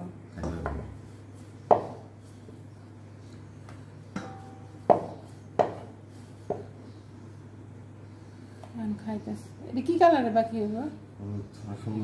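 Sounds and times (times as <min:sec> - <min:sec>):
sharp ringing knocks: 0:04.1 - 0:05.8.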